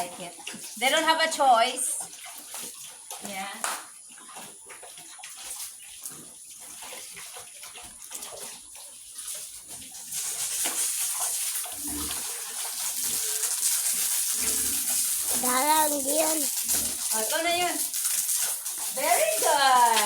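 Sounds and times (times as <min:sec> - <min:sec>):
pigs smacking and slurping: 0:00.0 - 0:20.0
water rushing: 0:11.8 - 0:20.0.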